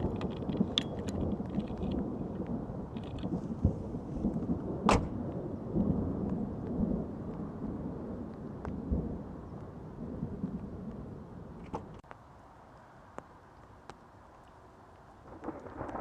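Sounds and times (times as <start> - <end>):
thunder rumbling: 0.0 - 12.0, 15.2 - 16.0.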